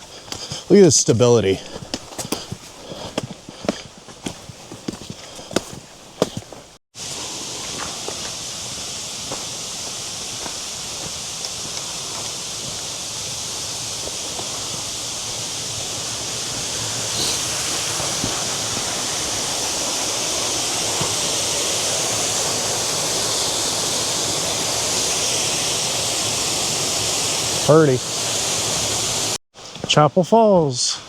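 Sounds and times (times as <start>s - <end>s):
waterfall rushing: 7.0s - 29.4s.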